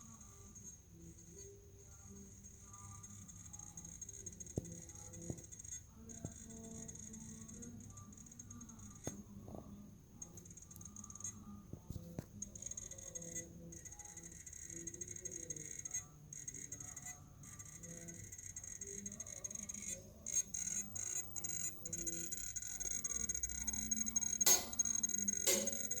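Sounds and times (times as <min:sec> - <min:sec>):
high-pitched electronic whine: 0:20.3 - 0:26.0.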